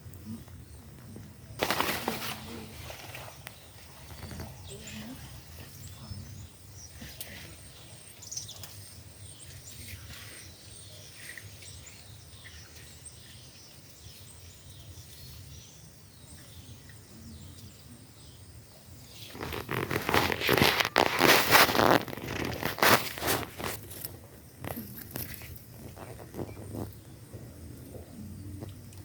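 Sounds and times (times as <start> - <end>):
loud rustling and scraping: 1.6 - 4.5, 19.2 - 26.9.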